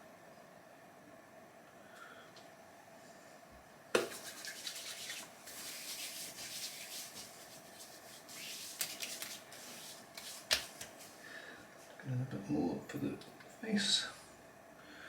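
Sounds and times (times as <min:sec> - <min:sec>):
hands rubbing skin: 0:04.0 - 0:11.2.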